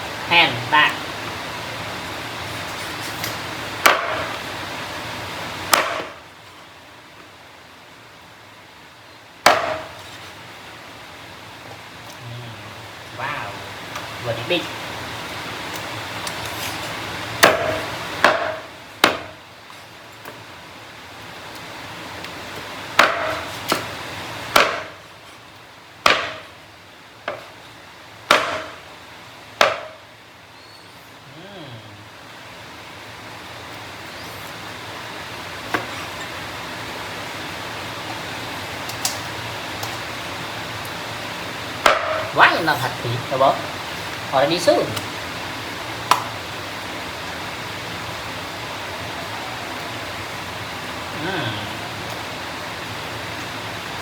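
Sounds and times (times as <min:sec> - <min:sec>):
steady hiss: 0:00.0 - 0:54.0
knife chopping on wooden board: 0:03.8 - 0:04.4, 0:05.7 - 0:06.2, 0:09.5 - 0:10.0, 0:17.4 - 0:19.4, 0:23.0 - 0:23.9, 0:24.5 - 0:25.0, 0:26.0 - 0:26.5, 0:27.3 - 0:27.5, 0:28.3 - 0:28.8, 0:29.6 - 0:30.0, 0:41.8 - 0:42.3.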